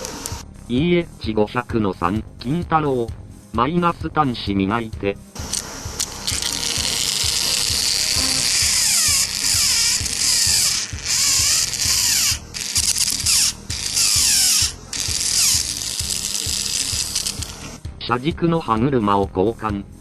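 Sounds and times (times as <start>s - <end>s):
toy train motor whirring: 0.0s - 0.4s, 5.4s - 17.8s.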